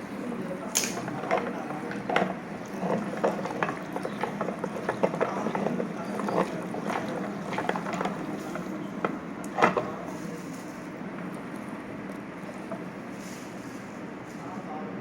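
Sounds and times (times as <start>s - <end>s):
meat grinder motor hum: 0.0s - 10.2s.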